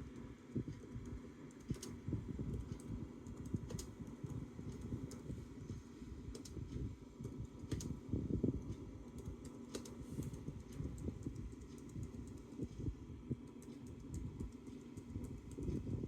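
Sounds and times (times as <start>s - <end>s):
keyboard keys clicking: 9.0s - 12.6s.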